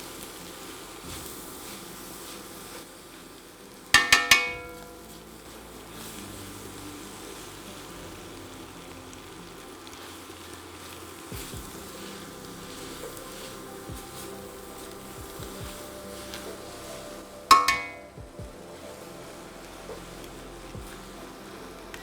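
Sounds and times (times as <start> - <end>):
food sizzling in a pan: 0.0 - 22.0
metallic taps on a pan: 4.0 - 5.0, 17.5 - 18.2.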